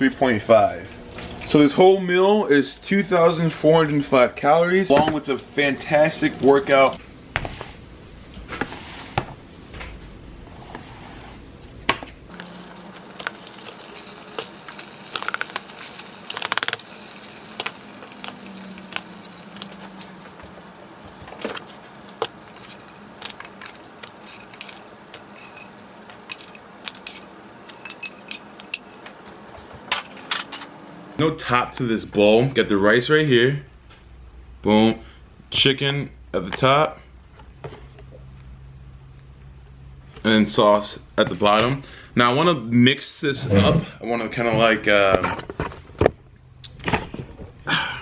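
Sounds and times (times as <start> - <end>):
utensils and dishes clinking: 12.3 - 31.2.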